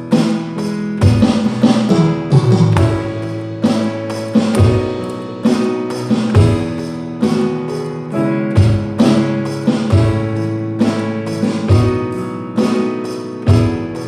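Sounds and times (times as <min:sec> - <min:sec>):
guitar chords: 0:00.0 - 0:14.0
kick drum thumps: 0:02.4 - 0:03.2, 0:06.3 - 0:06.8.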